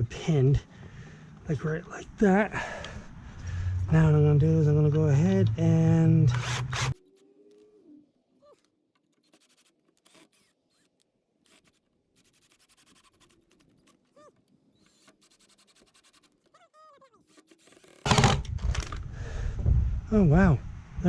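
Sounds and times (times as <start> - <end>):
handling clicks and scrapes: 6.2 - 19.1
drill driving screw into wood: 6.3 - 7.3, 9.2 - 14.0, 14.8 - 16.4, 17.2 - 19.1.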